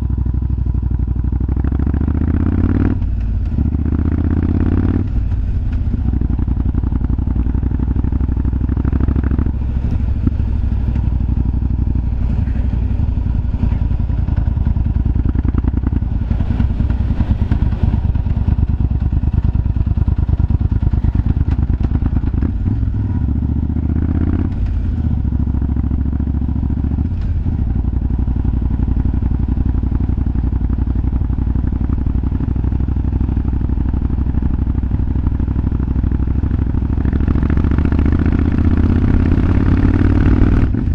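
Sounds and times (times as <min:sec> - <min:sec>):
motorcycle engine revving: 0:00.0 - 0:40.9
exhaust popping: 0:01.7 - 0:32.3.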